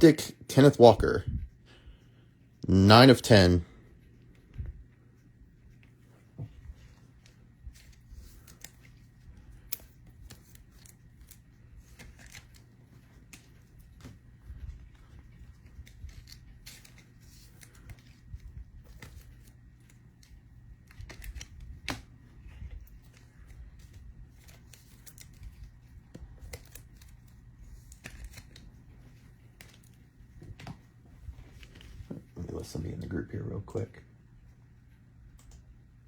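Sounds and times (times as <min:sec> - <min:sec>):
faint low hum: 0:00.0 - 0:36.0
trading cards rustling and sliding: 0:06.8 - 0:32.3.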